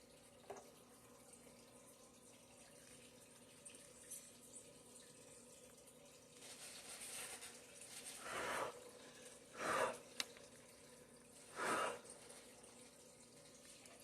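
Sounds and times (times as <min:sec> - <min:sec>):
puffs of breath blown: 0:11.5 - 0:12.1.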